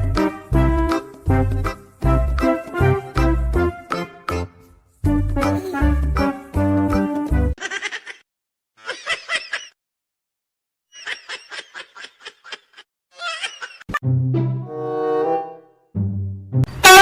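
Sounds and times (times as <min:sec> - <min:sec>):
brass music: 0:02.1 - 0:03.9, 0:14.5 - 0:17.0.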